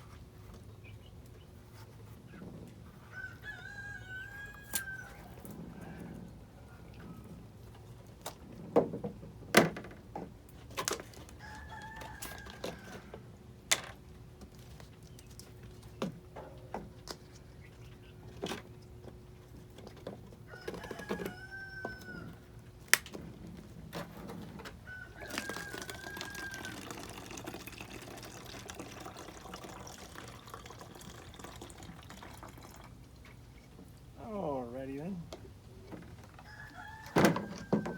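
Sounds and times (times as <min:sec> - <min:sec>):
rooster crowing: 0:03.0 - 0:06.2, 0:11.4 - 0:13.1, 0:20.5 - 0:22.4, 0:24.9 - 0:27.0, 0:36.4 - 0:37.9.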